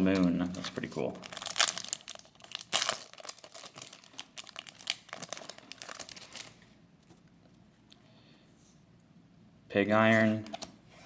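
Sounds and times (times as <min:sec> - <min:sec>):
foil wrapper crinkling: 0:00.1 - 0:06.6.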